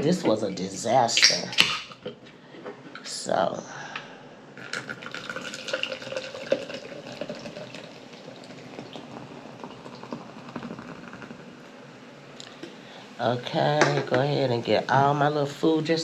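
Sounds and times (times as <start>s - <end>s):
drink pouring into a glass: 4.6s - 11.6s
soda fizzing in a glass: 4.6s - 11.7s.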